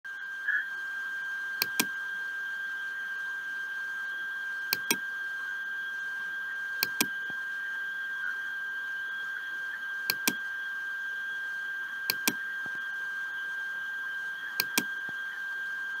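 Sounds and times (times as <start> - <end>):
high-pitched electronic whine: 0.1 - 16.0
computer mouse clicks: 1.6 - 1.9, 4.8 - 5.0, 6.8 - 7.2, 10.1 - 10.4, 12.1 - 12.4, 14.6 - 15.0.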